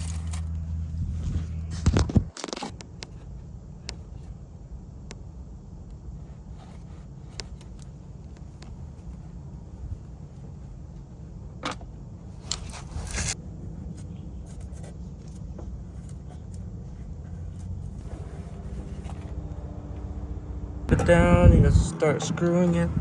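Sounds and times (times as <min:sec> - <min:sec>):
steady low hum: 0:00.0 - 0:23.0
scraping rustle: 0:12.3 - 0:19.4.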